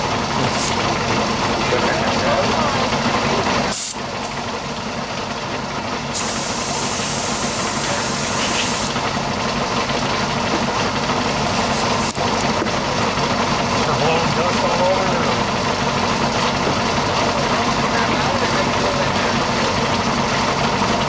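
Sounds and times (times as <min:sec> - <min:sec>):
air compressor running: 0:00.0 - 0:21.0
compressed air hissing: 0:03.7 - 0:04.4, 0:06.1 - 0:09.0, 0:11.3 - 0:12.2.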